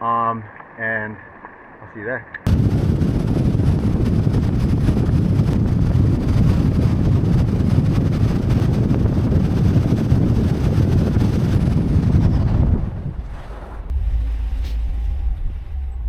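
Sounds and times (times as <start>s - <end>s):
wind buffeting microphone: 2.4s - 16.0s
vehicle road noise: 3.2s - 16.0s.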